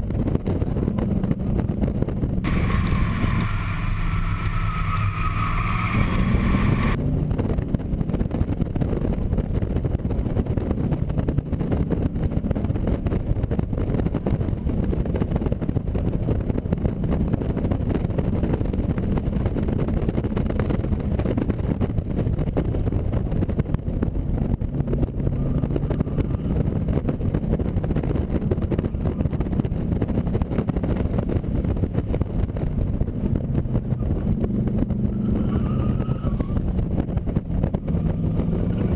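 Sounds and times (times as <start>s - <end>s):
car engine revving hard: 2.4s - 7.4s.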